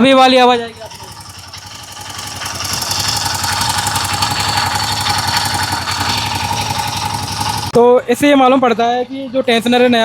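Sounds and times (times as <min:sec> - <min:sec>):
motorcycle engine idling: 0:00.0 - 0:07.8.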